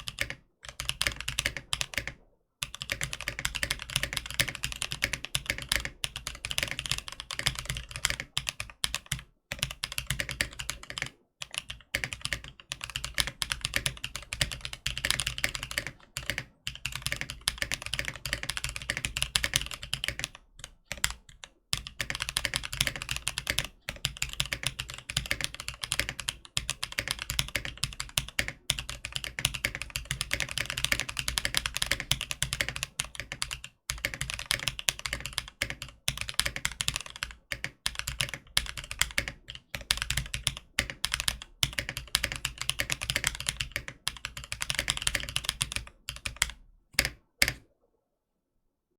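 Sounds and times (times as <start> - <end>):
fast mechanical keyboard typing: 0.0 - 47.6.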